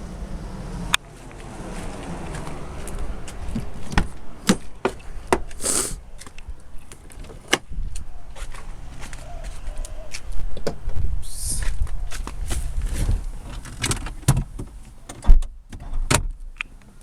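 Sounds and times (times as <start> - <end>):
low rumble: 0.0 - 5.3
high hissing rustles: 5.5 - 6.1.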